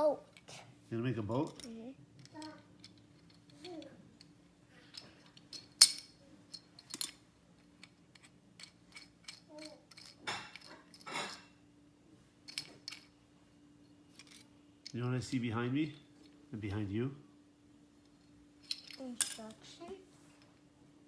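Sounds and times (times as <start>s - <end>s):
toy building pieces clicking: 7.8s - 11.0s.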